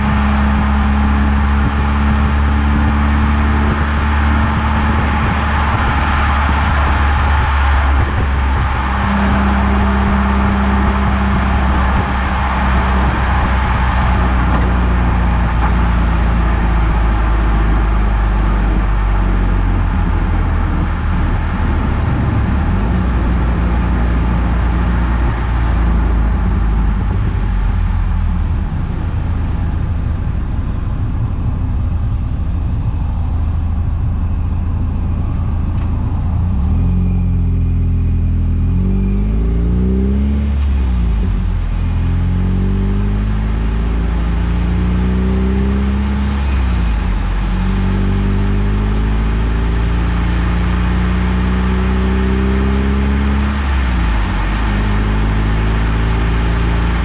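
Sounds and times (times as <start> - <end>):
road noise: 0.0 - 57.0
car engine running: 8.0 - 21.9, 26.9 - 36.4, 46.3 - 57.0.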